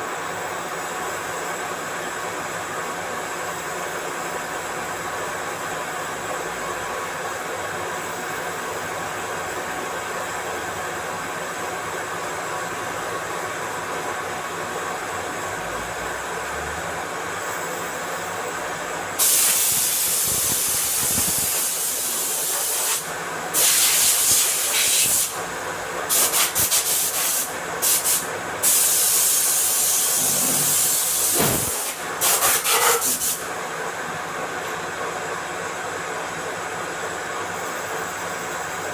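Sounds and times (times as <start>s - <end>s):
loud hissing bursts: 19.2s - 25.4s, 26.1s - 33.5s
machine humming: 30.0s - 33.1s.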